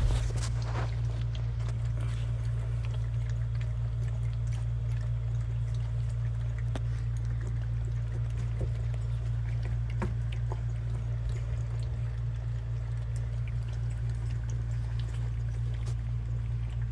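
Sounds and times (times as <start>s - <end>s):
low hum: 0.0s - 3.4s
puppies lapping milk: 0.0s - 16.9s.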